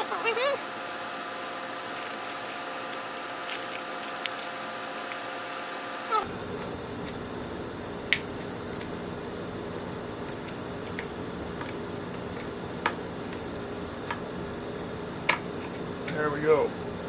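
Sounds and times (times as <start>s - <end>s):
small parts clicking: 1.8s - 5.6s.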